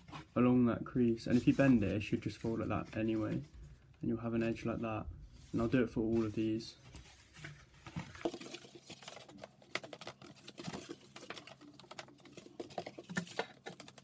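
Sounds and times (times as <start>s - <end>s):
cardboard being folded: 4.4s - 14.0s.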